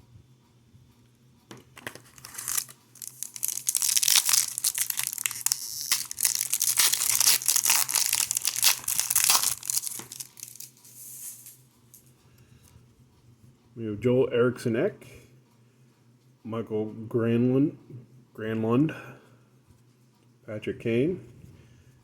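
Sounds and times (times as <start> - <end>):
wrapper crackling and rustling: 1.5 - 12.1.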